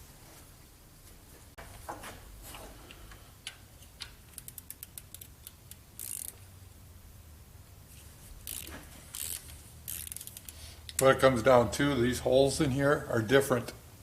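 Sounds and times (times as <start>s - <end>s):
small metal parts clicking: 3.4s - 6.5s, 8.4s - 11.0s.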